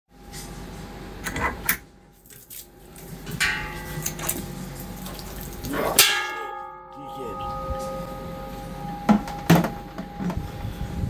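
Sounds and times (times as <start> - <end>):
liquid running and splashing: 4.2 - 6.1.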